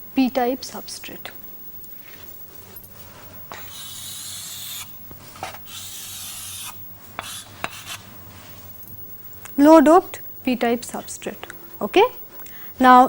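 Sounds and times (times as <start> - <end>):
pen scratching on paper: 3.6 - 8.2
pen tapping: 3.7 - 8.1.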